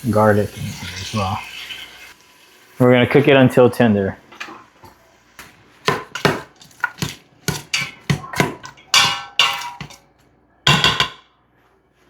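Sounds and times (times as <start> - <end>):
metal utensil scraping a pot: 6.1 - 10.0.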